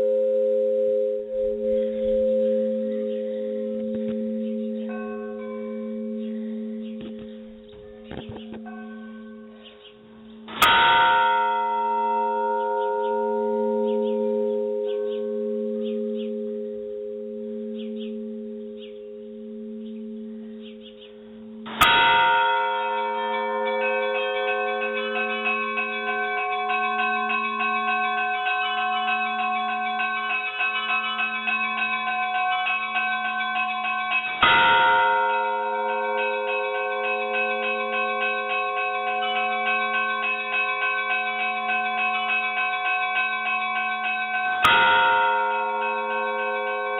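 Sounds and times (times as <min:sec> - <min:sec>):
higher bells ringing quickly: 0:00.0 - 0:46.9
large church bell ringing: 0:00.0 - 0:46.9.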